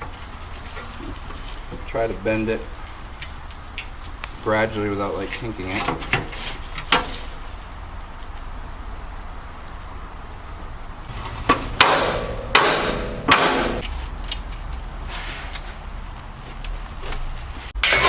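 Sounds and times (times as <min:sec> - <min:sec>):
metal on metal strikes ringing: 0:17.8 - 0:18.0.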